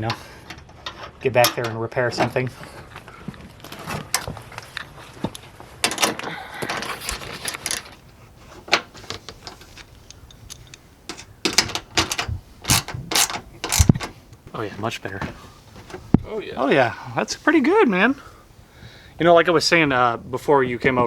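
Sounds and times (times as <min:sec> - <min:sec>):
metal clicks and clinks of tools: 0:10.1 - 0:11.3, 0:12.0 - 0:13.9.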